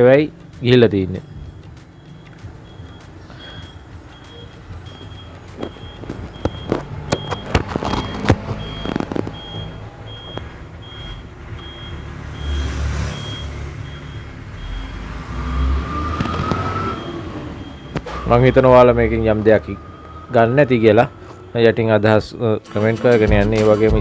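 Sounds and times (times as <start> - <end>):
sharp clicks and knocks: 4.2 - 9.7
low rumbles: 13.7 - 24.0.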